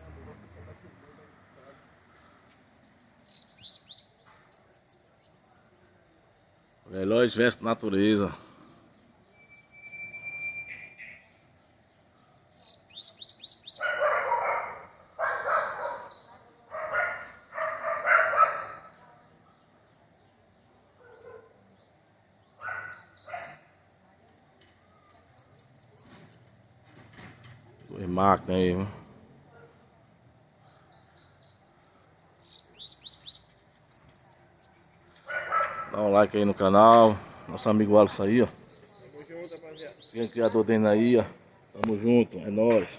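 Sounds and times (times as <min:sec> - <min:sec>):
bird singing high trill: 0:01.6 - 0:06.2, 0:09.2 - 0:16.7, 0:20.8 - 0:36.1, 0:37.3 - 0:41.4.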